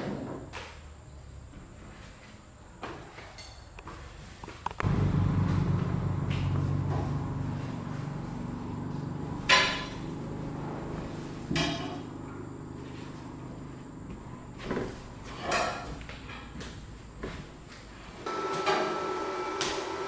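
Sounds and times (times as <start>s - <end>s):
low machine hum: 4.8s - 18.5s.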